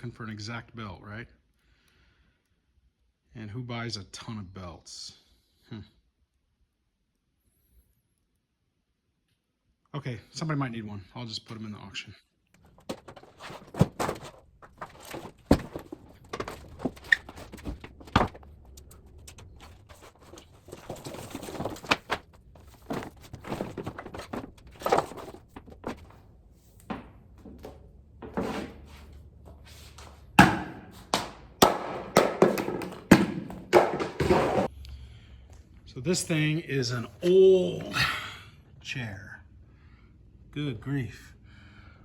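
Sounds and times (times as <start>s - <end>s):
clattering knocks: 12.6s - 26.2s, 30.3s - 34.7s
objects knocking and thunking: 12.6s - 34.7s
rustling: 12.6s - 34.7s.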